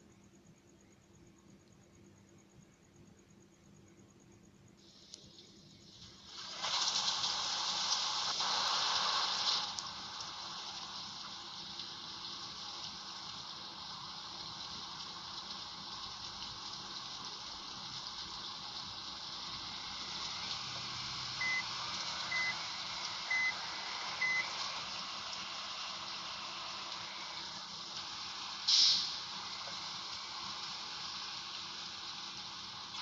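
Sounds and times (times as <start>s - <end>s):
steady rushing hiss: 4.6s - 33.0s
high electronic beeps: 21.4s - 22.6s, 23.3s - 23.6s, 24.2s - 24.4s.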